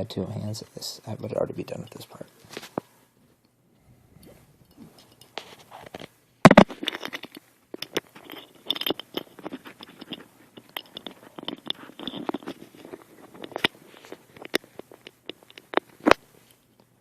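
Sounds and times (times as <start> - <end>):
airbrush parts clicking and scraping: 4.6 - 16.9.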